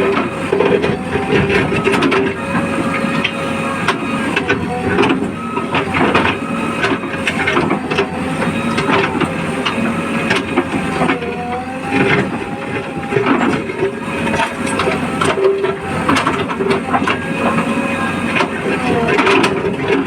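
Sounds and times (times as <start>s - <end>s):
diesel engine running: 0.0s - 20.0s
hydraulic whine: 0.0s - 20.0s.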